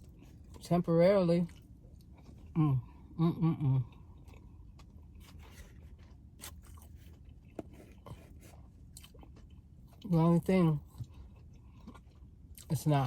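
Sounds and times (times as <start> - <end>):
person chewing food: 0.0 - 0.6, 1.4 - 3.2, 3.8 - 10.1, 10.8 - 12.7.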